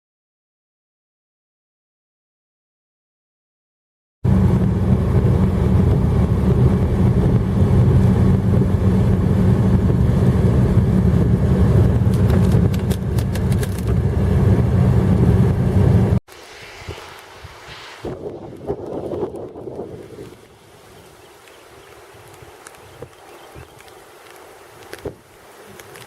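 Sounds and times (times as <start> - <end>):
car driving rumble: 4.3 - 16.2
sharp clicks: 12.0 - 14.0.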